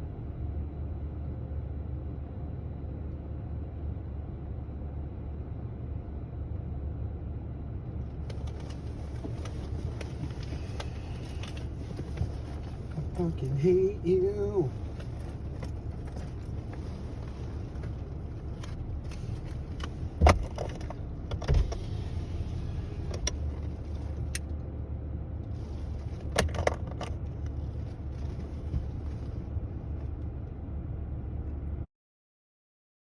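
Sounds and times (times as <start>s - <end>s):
car cabin rumble: 7.9s - 31.8s.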